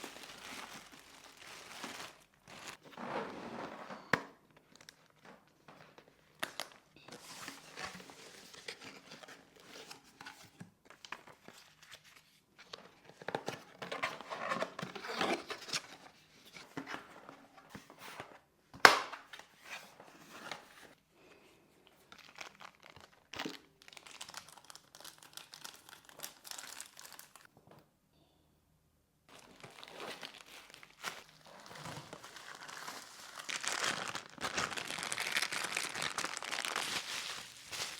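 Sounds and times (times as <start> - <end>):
plastic and paper crinkling: 0.0 - 16.1, 22.0 - 27.5, 29.3 - 37.9.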